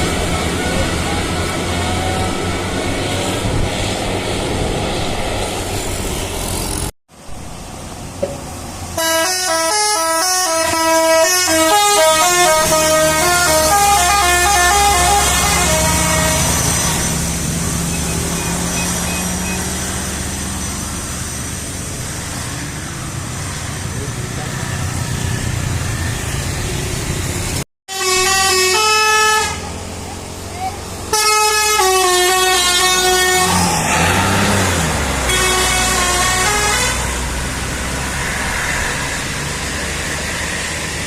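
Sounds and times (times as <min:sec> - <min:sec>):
bus engine and road noise: 0:00.0 - 0:41.0
bus horn playing a tune: 0:08.9 - 0:17.2, 0:27.9 - 0:30.0, 0:31.0 - 0:37.4.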